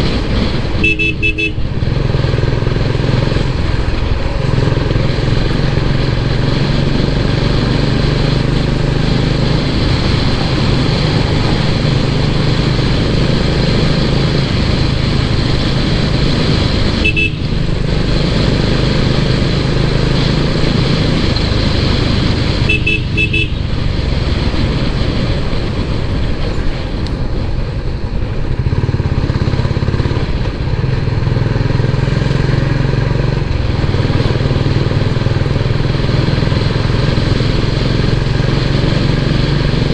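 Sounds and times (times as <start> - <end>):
motorcycle engine running: 0.0 - 39.9
wind and road noise: 0.0 - 39.9
vehicle horn beeping: 0.8 - 1.7, 16.9 - 17.6, 22.6 - 23.7.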